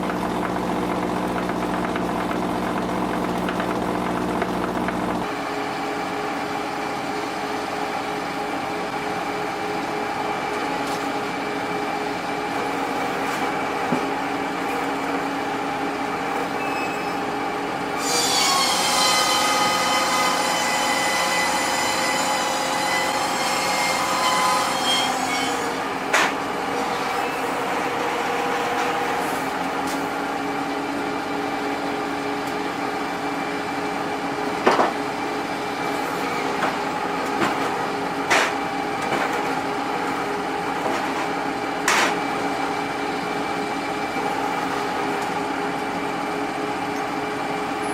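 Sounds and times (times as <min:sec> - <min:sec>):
sawmill machinery drone: 0:00.0 - 0:05.3.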